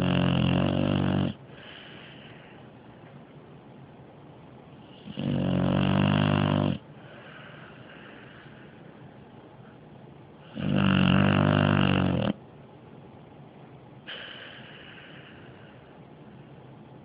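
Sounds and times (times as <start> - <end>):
dog snoring: 0.0 - 2.6, 4.8 - 8.6, 10.4 - 12.4, 14.1 - 15.8
dog breathing softly: 1.5 - 2.7, 14.1 - 16.0.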